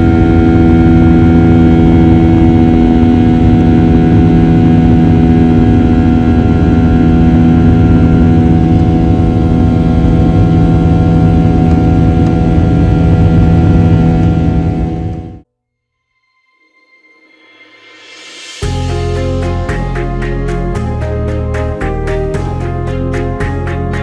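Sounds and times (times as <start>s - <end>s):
airliner engine drone in cabin: 0.0s - 15.4s.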